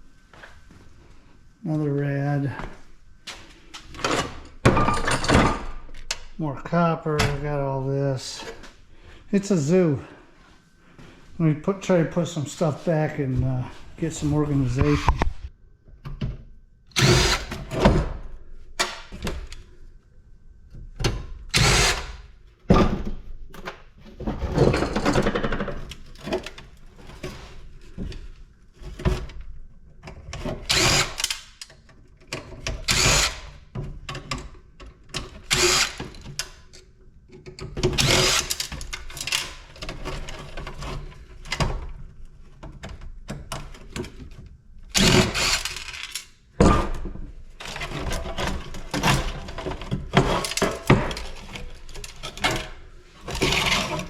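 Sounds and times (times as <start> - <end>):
metal parts and tools clanking: 3.8 - 6.4, 44.9 - 54.0.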